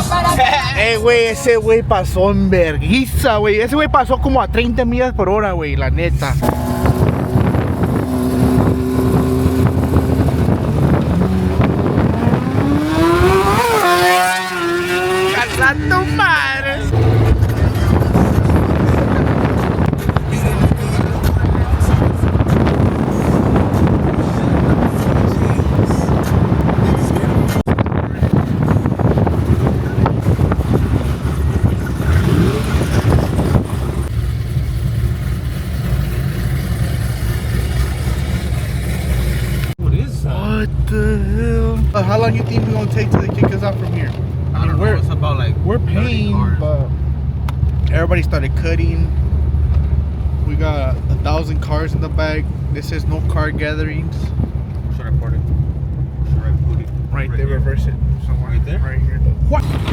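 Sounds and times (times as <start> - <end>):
car engine droning: 0.0 - 59.9
wind on microphone: 6.4 - 15.6, 16.9 - 34.1.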